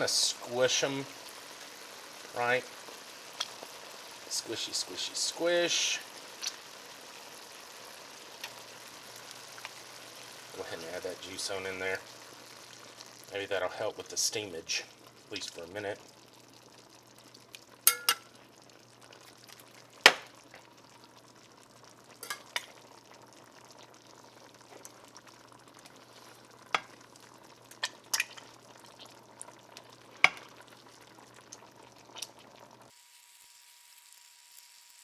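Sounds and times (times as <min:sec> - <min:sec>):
faint sizzle: 0:00.0 - 0:35.0
spoon knocking against pot: 0:17.9 - 0:18.3.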